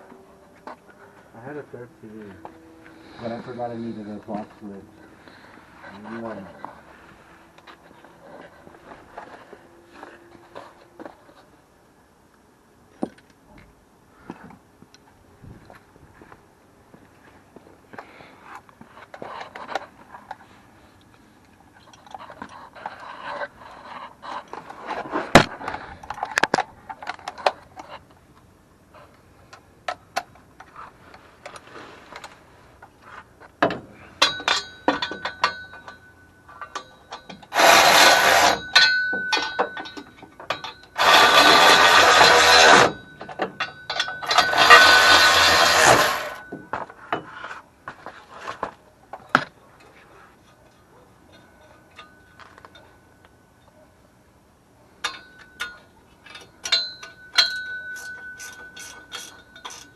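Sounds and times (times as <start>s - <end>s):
metal hand tools clinking: 34.0s - 46.5s, 55.0s - 59.9s
power tool running: 37.5s - 38.6s, 41.0s - 43.0s, 44.2s - 46.4s.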